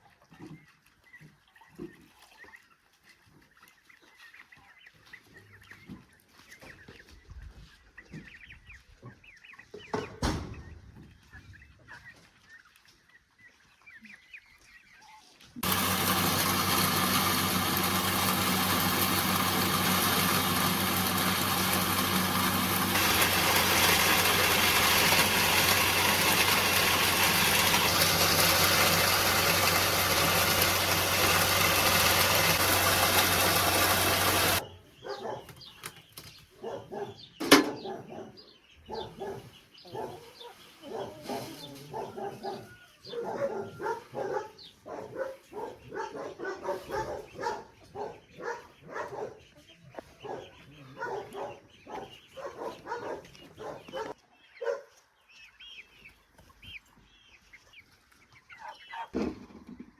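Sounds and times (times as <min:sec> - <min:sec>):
chickens clucking: 0:00.0 - 0:59.9
motor-driven machine humming: 0:15.6 - 0:34.6.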